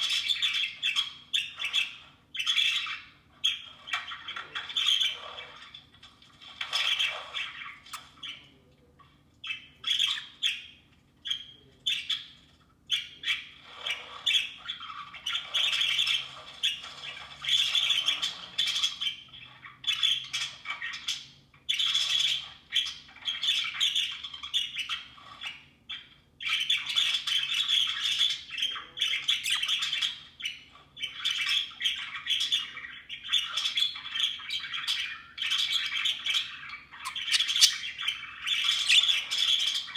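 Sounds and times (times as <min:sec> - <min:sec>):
budgerigars chattering and squawking: 0:09.4 - 0:39.9.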